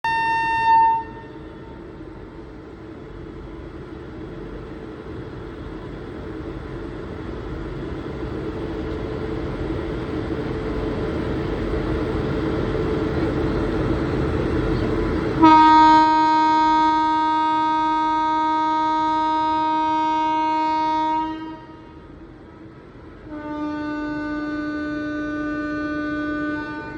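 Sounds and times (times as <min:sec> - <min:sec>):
train horn: 0:00.0 - 0:01.8, 0:15.4 - 0:22.1, 0:23.3 - 0:26.9
train rumble: 0:00.0 - 0:26.9.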